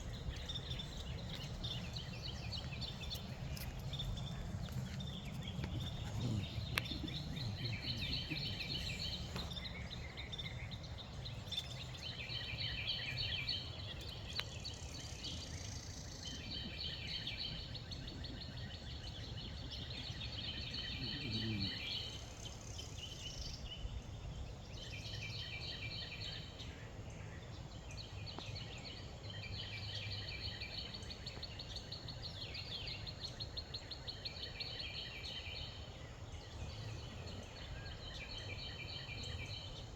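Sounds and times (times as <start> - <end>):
wind rumble on microphone: 0.0 - 22.0
songbirds singing trilled notes: 0.0 - 39.9.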